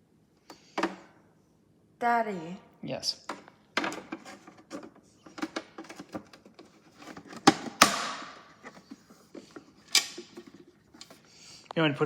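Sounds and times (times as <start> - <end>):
sharp plastic knocks: 7.2 - 8.4.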